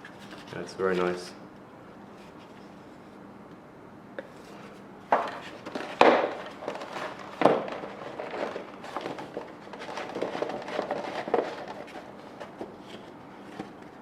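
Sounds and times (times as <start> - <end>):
packaging rustling: 5.4 - 14.0.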